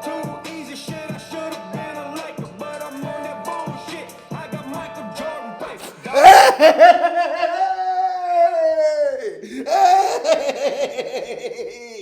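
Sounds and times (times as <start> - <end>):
man laughing excitedly: 5.8 - 12.0.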